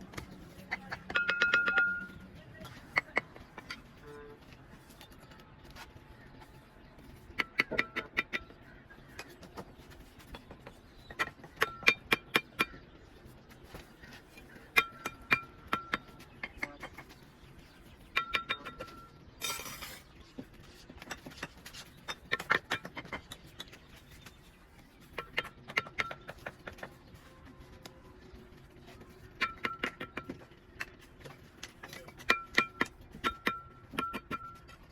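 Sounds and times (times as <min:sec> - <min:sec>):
trowel clinking on brick: 0:00.1 - 0:03.9, 0:18.1 - 0:20.2, 0:29.4 - 0:34.9
trowel scrape: 0:19.4 - 0:20.2.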